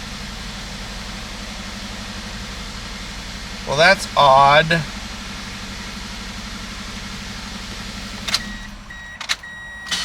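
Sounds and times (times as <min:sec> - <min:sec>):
car engine idling: 0:00.0 - 0:10.0
sharp clicks: 0:08.2 - 0:10.0
high electronic beeps: 0:08.3 - 0:10.0.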